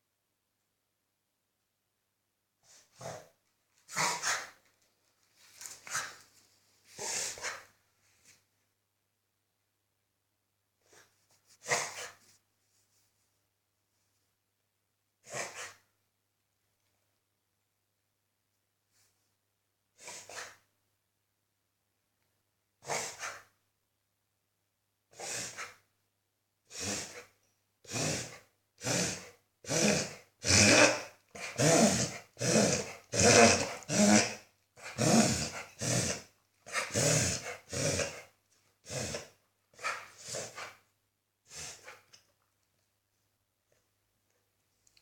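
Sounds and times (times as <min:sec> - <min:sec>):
dog reverse sneezing: 0:03.9 - 0:04.6, 0:07.0 - 0:07.7, 0:10.9 - 0:12.2, 0:15.3 - 0:15.8, 0:20.0 - 0:20.6, 0:22.8 - 0:23.5, 0:38.9 - 0:40.8, 0:41.5 - 0:42.0.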